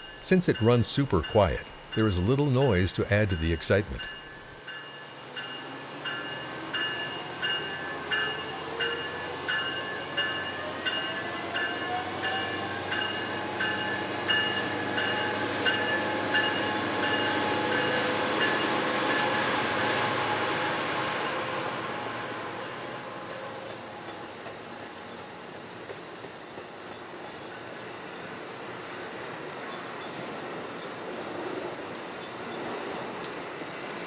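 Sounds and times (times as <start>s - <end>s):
train rushing noise: 0.0s - 4.6s
locomotive bell ringing: 0.0s - 19.6s
rising whine of train: 0.0s - 34.0s.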